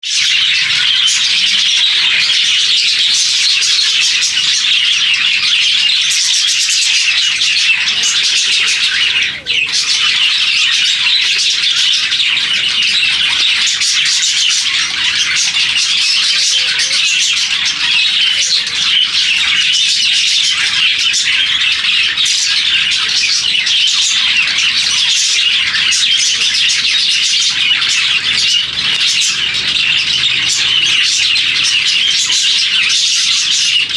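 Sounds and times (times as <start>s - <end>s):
parrots chattering and chirping: 0.0s - 33.9s.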